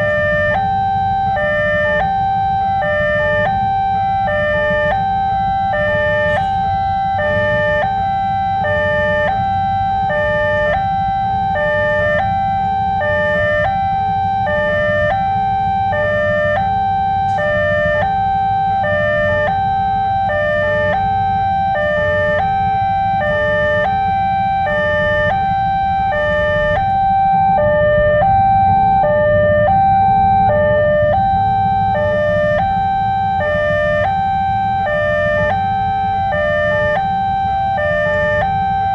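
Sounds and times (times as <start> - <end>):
two-tone level-crossing alarm: 0.0 - 38.9
steady low rumble: 3.0 - 38.9.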